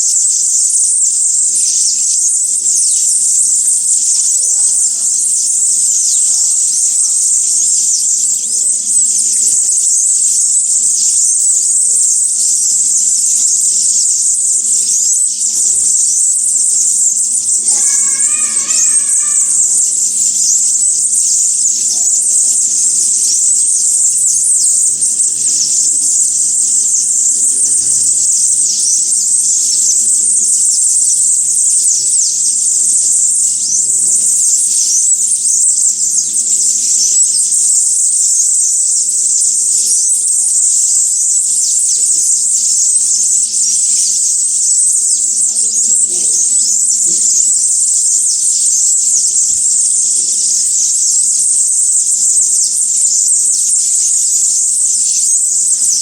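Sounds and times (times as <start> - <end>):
chorus of small birds chirping: 0.0 - 56.0
warbling bird call: 13.8 - 29.2.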